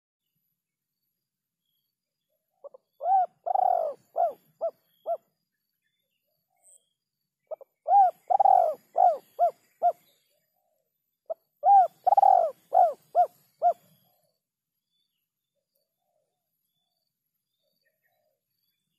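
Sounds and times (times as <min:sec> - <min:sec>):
dove cooing: 0:02.6 - 0:05.2, 0:07.5 - 0:10.0, 0:11.6 - 0:13.9.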